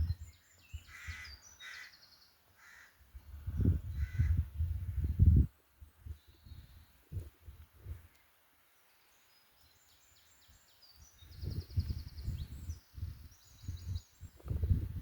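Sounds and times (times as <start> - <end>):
gusty rumble on microphone: 0.0 - 1.2, 3.2 - 8.0, 11.3 - 15.0
small birds chirping: 0.0 - 7.3, 7.9 - 14.9.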